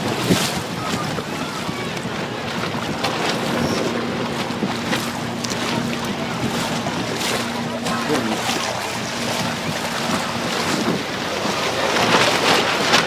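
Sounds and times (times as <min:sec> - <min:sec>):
waves washing on shore: 0:00.0 - 0:13.0
wind blowing across microphone: 0:00.0 - 0:13.0.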